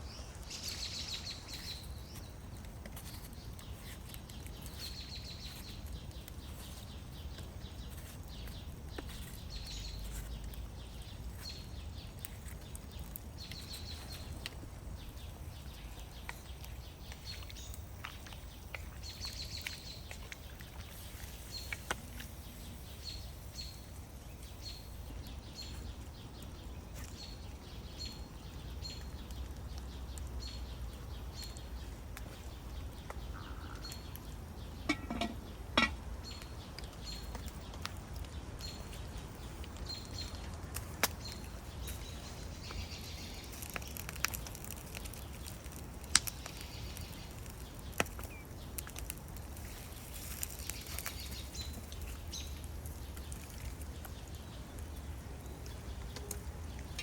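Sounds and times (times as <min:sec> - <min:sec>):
small bird chirping: 0:00.0 - 0:37.9, 0:41.0 - 0:57.0.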